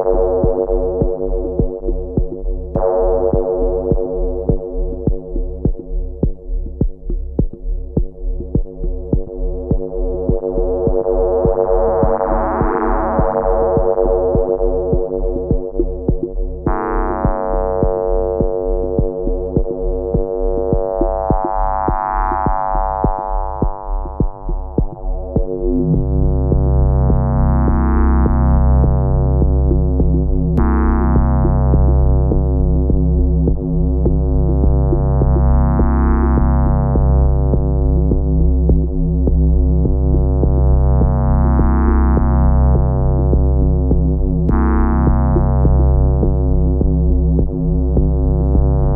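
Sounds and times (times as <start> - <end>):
synthesizer drone chord: 0.0 - 5.7, 16.6 - 48.9
fast low pulse: 0.0 - 48.9
heavy bass drone: 0.0 - 48.9.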